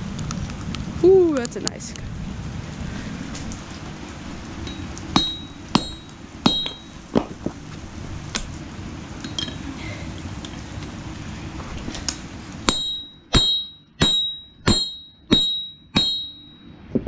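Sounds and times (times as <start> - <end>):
rain hiss: 0.0 - 12.7
hammer striking metal on anvil: 4.7 - 6.9, 12.7 - 16.6.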